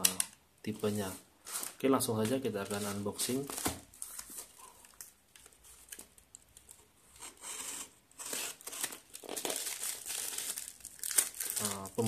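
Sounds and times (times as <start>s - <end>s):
packaging crinkling and rustling: 1.5s - 6.9s, 8.2s - 12.0s.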